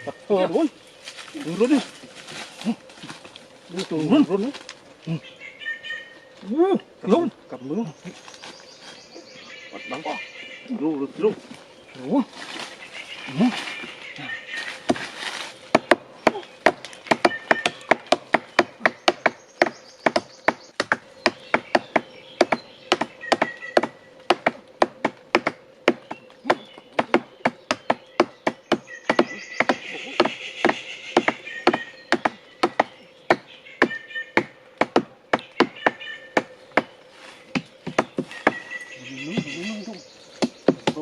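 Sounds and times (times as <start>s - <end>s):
faint bird chirps: 5.0s - 24.2s, 26.0s - 34.5s, 35.4s - 41.0s
chopping wood: 15.7s - 38.7s, 40.4s - 41.0s.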